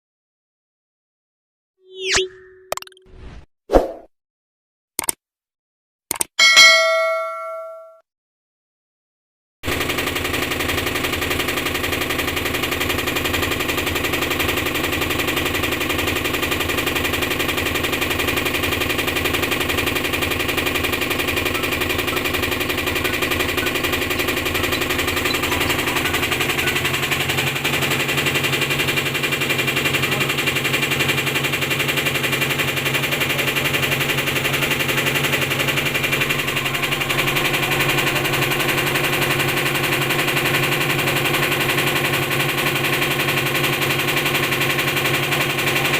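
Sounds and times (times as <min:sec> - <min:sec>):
washing machine motor hum: 0:10.7 - 0:45.9.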